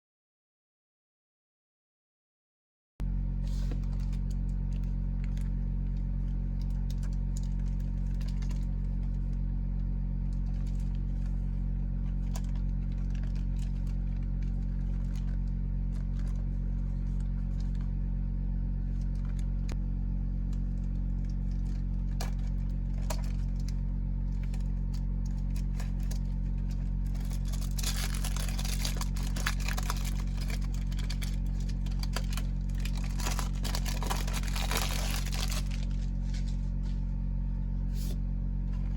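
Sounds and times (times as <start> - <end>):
steady low hum: 3.0 - 38.9
packaging crinkling: 10.3 - 17.8, 20.7 - 37.0.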